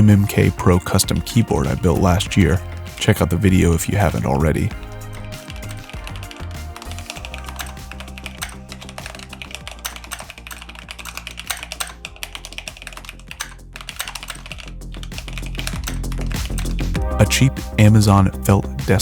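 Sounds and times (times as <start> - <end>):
background music: 0.0 - 19.0
mechanical keyboard typing: 0.1 - 17.0.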